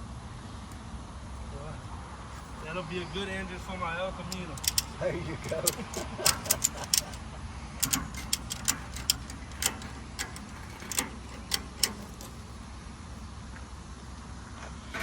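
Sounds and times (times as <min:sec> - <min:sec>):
ratchet strap metal clicks: 0:04.3 - 0:07.2, 0:07.8 - 0:12.5.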